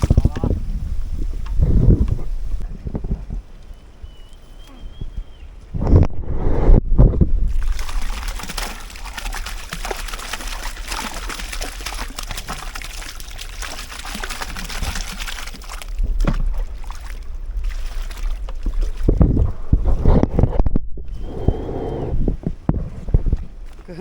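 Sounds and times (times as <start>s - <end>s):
wind rumble on microphone: 0.0s - 9.4s, 14.4s - 24.0s
water splashing and trickling: 7.4s - 20.0s.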